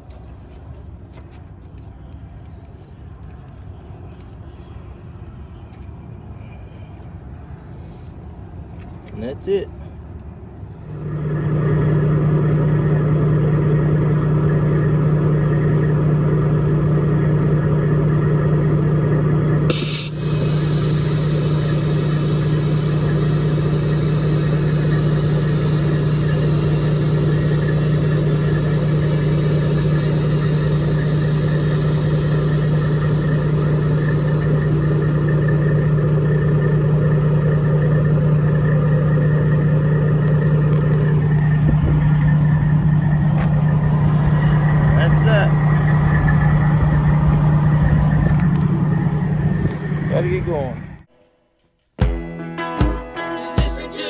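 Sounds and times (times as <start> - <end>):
diesel truck engine idling: 10.4 - 51.1.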